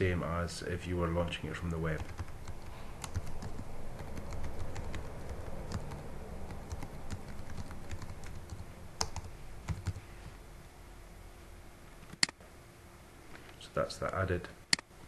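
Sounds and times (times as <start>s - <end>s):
computer keyboard typing: 1.7s - 10.0s.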